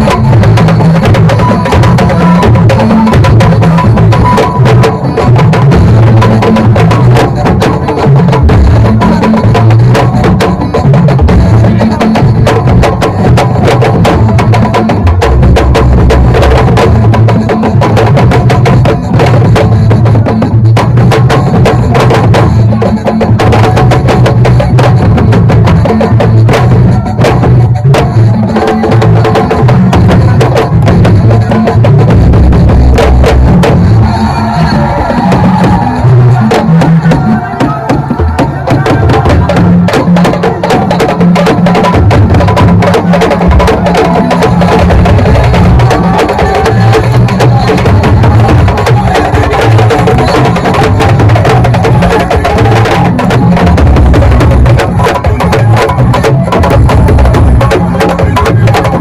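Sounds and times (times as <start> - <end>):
pulsing bass: 0.0 - 7.6, 29.7 - 58.7
drum-driven music: 0.0 - 59.0
fast percussion strikes: 0.0 - 59.0.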